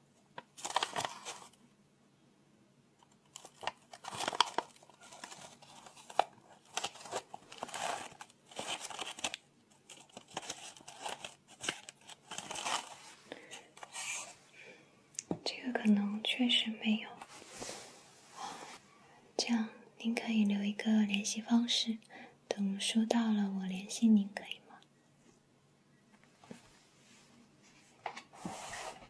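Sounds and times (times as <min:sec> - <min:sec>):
paper rustling and crinkling: 0:00.4 - 0:01.6, 0:03.0 - 0:14.4.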